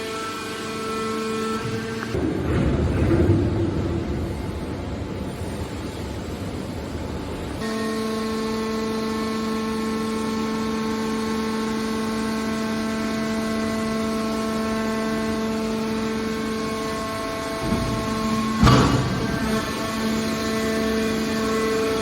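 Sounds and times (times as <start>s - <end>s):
mechanical rumble: 1.6s - 7.6s, 15.8s - 22.0s
steady pitched hum: 3.6s - 22.0s.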